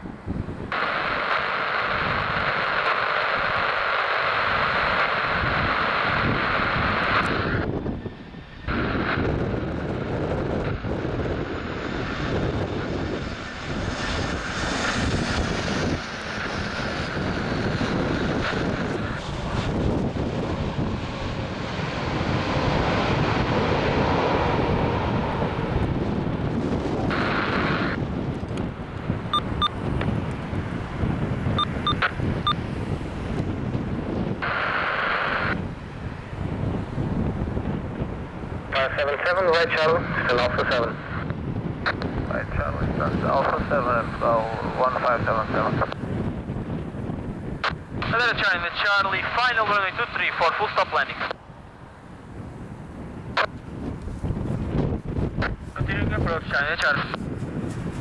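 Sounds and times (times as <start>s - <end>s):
jet engines rumbling: 0.0s - 58.0s
radio hiss: 0.7s - 7.6s, 34.4s - 35.6s, 38.7s - 41.2s, 42.3s - 46.0s, 48.0s - 51.4s, 55.4s - 57.2s.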